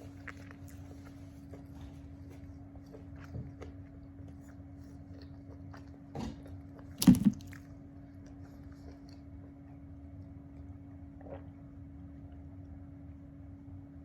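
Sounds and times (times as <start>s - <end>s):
person chewing food: 0.0s - 12.5s
steady low hum: 0.0s - 14.0s.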